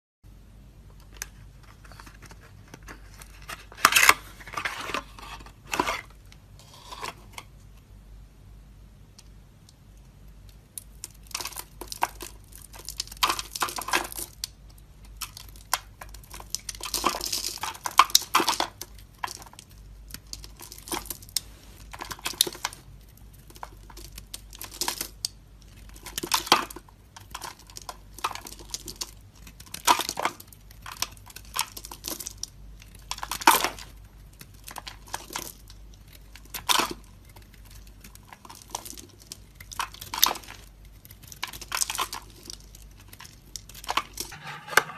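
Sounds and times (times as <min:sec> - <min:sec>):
knife scraping through soap: 0:04.6 - 0:07.4, 0:44.2 - 0:44.9.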